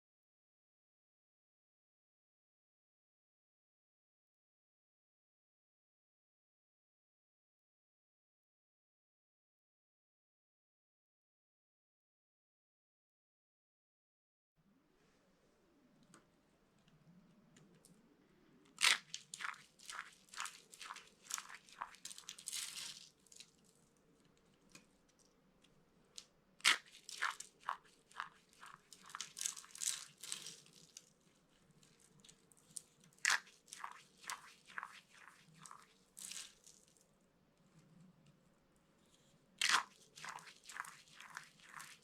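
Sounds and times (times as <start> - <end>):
bar soap crunching and crackling: 18.7 - 25.2, 26.2 - 37.0, 39.6 - 42.0
soap snapping: 26.2 - 30.6.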